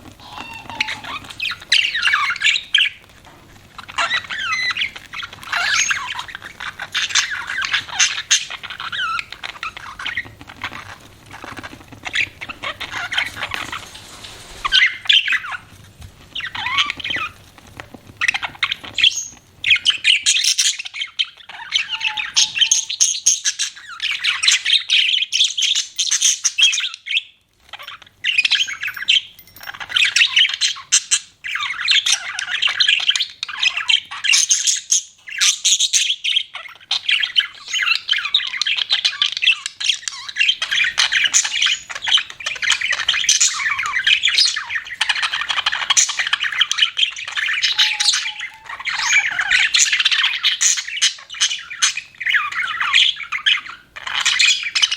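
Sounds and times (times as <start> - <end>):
budgerigars chattering and chirping: 0.0 - 15.7, 16.3 - 54.9.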